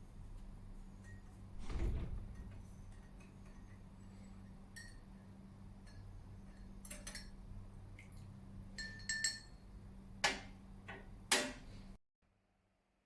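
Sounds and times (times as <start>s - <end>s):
low steady hum: 0.0s - 8.9s
sharp knocks: 1.6s - 3.2s
dishes and glassware clinking: 8.8s - 9.6s.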